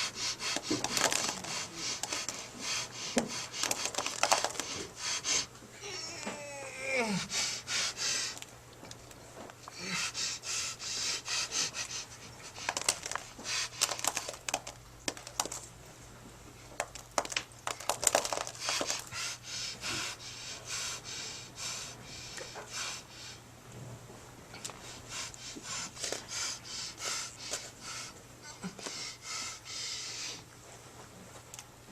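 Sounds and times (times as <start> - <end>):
person panting and gasping: 0.0 - 8.4, 9.6 - 14.7, 17.7 - 23.4, 24.8 - 30.5.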